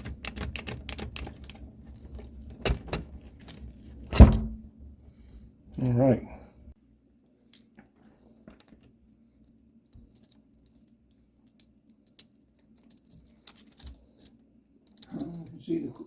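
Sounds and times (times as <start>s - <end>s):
small parts clicking and rattling: 0.0s - 3.8s, 8.5s - 16.0s.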